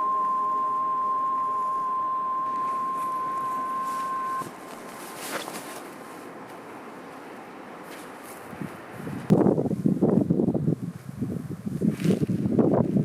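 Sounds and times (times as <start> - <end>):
ringing musical tone: 0.0 - 5.3
faint outdoor background noise: 0.0 - 13.0.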